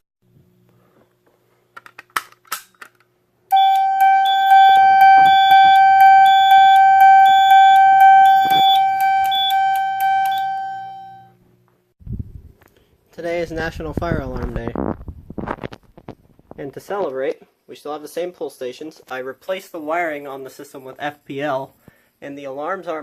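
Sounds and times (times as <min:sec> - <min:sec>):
fire alarm ringing: 0:03.5 - 0:11.4.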